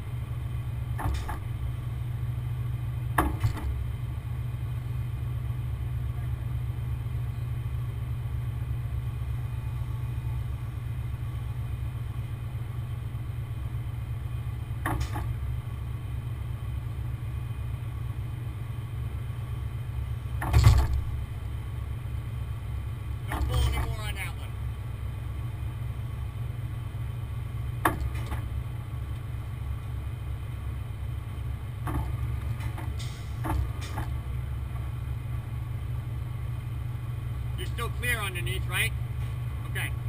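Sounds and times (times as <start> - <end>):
truck engine rumbling: 0.0 - 40.0
clunks: 0.9 - 1.6, 3.1 - 3.9, 14.7 - 15.5, 20.3 - 21.4, 23.1 - 24.4, 27.7 - 30.0, 31.5 - 35.0.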